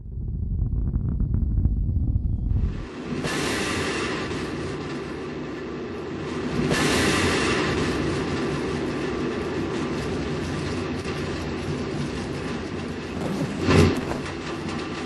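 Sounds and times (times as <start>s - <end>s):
rocket engine roar: 0.0s - 4.7s.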